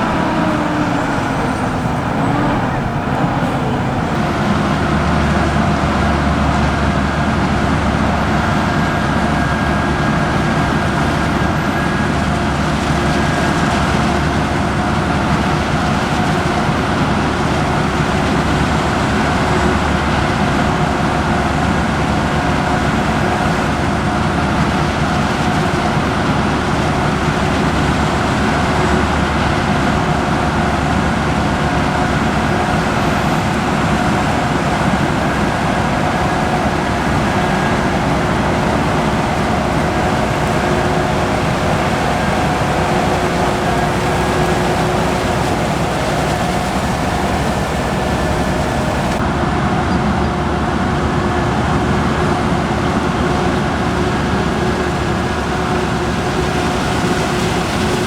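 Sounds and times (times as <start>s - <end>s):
heavy farm machinery engine drone: 0.0s - 58.0s
thin steady whine: 35.7s - 49.2s.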